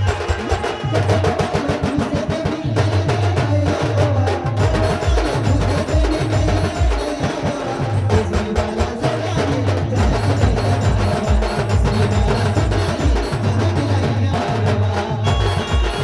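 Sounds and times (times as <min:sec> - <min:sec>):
band playing dance tune: 0:00.0 - 0:16.0
fast drum and percussion strokes: 0:00.0 - 0:16.0.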